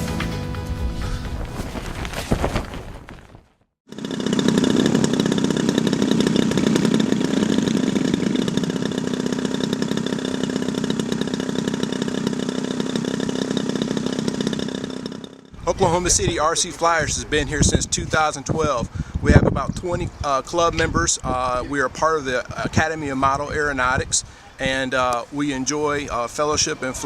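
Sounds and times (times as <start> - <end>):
music: 0.0 - 1.7
model airplane engine buzzing: 3.9 - 16.3.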